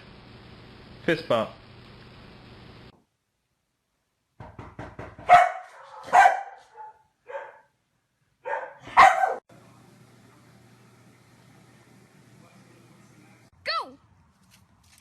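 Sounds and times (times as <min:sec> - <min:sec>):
dog barking: 0:05.2 - 0:07.7, 0:08.4 - 0:09.4.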